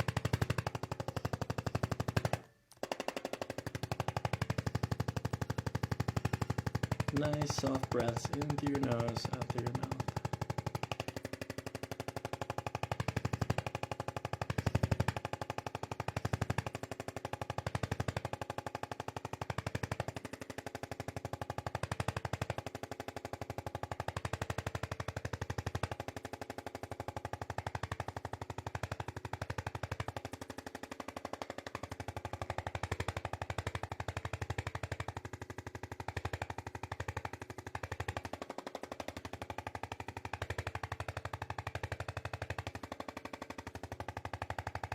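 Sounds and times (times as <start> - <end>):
massage gun hammering: 0.0 - 44.9.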